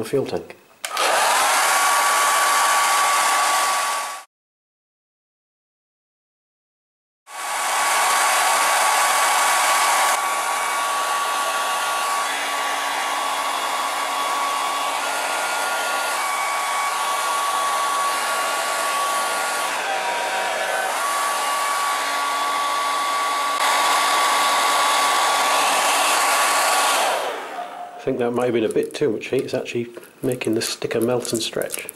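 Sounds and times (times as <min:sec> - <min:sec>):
hair dryer blowing with whine: 0:00.8 - 0:04.3, 0:07.3 - 0:28.1.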